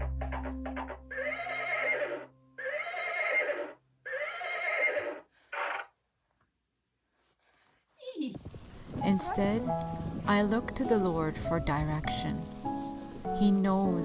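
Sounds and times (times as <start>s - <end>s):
farm animal calling: 0.2s - 5.9s, 9.1s - 9.8s.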